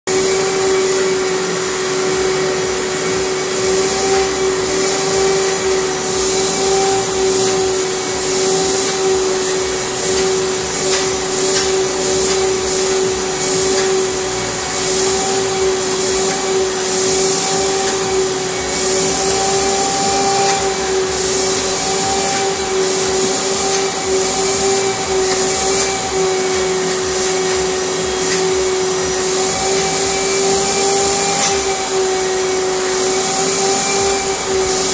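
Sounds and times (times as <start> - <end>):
vacuum cleaner running: 0.0 - 34.9.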